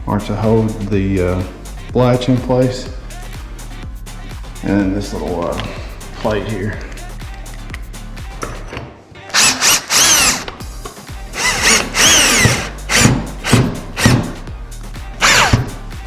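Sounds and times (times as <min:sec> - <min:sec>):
power drill running in bursts: 0:09.4 - 0:10.4, 0:11.4 - 0:14.2, 0:15.2 - 0:15.7.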